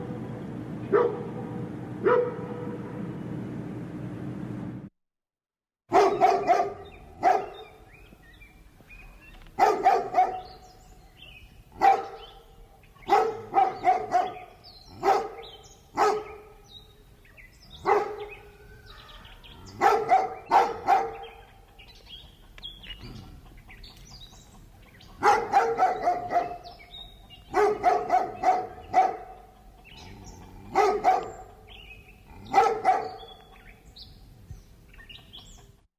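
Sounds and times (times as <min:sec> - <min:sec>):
large dog barking: 0:00.9 - 0:03.0, 0:05.9 - 0:07.8, 0:09.6 - 0:10.7, 0:11.7 - 0:16.8, 0:17.4 - 0:21.6, 0:25.1 - 0:33.4.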